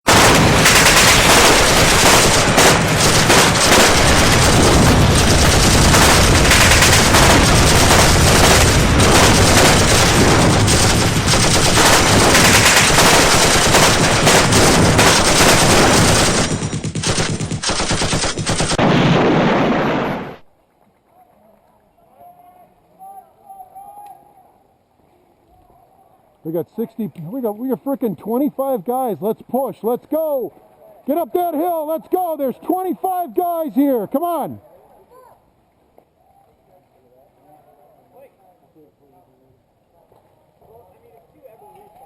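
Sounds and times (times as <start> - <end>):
machine-gun bursts: 0.1 - 20.4
rapid single gunshots: 0.1 - 20.4.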